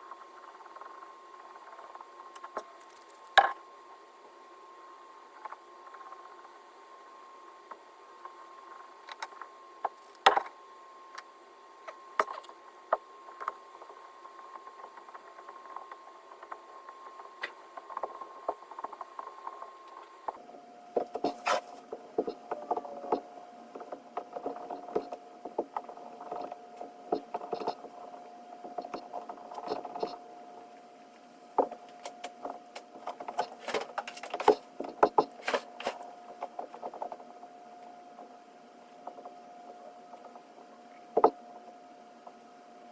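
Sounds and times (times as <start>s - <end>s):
faint steady hum: 0.0s - 42.9s
hand tools tapping and scraping clay: 31.5s - 37.2s.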